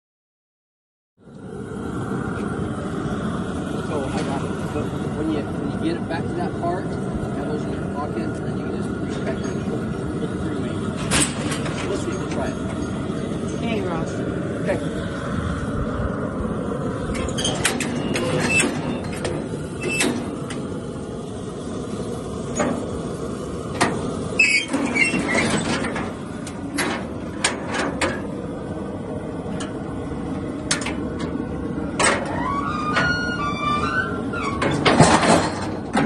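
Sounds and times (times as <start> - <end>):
steady background rumble: 1.2 - 36.0
steel gates knocking and clanking: 11.0 - 13.0, 17.1 - 20.6, 23.8 - 28.3, 32.0 - 36.0.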